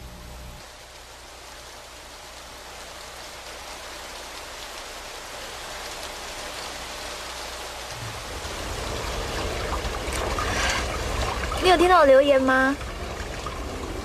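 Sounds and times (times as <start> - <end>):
steady rain falling: 0.0 - 14.0.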